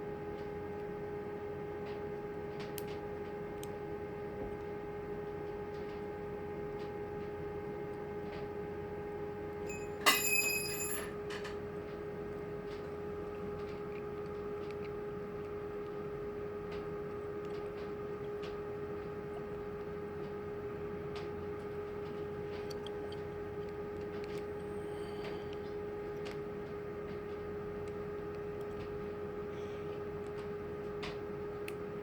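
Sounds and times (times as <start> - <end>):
steady hum: 8.7 - 13.6
sharp metal clink: 9.7 - 11.3.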